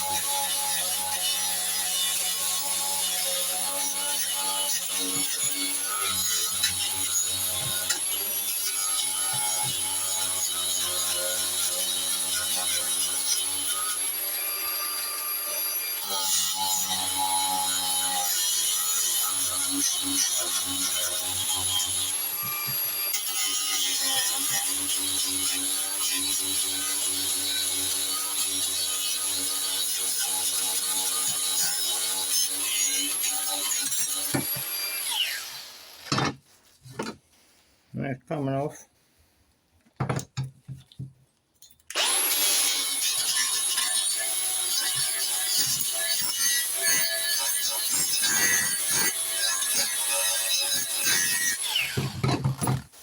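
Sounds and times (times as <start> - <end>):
power tool motor running: 41.9 - 43.3.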